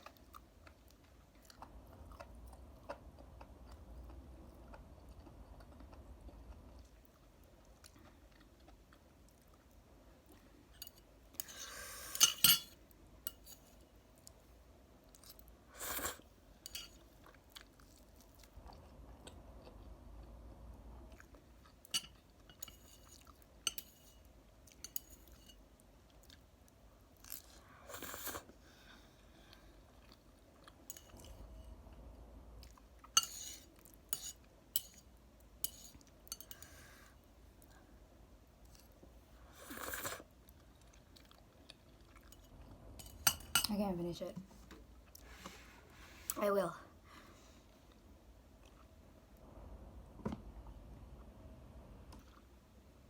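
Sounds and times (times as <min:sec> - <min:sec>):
person chewing noodles: 0:00.0 - 0:10.4, 0:26.1 - 0:31.2, 0:38.6 - 0:42.4, 0:47.9 - 0:49.0, 0:52.2 - 0:52.6.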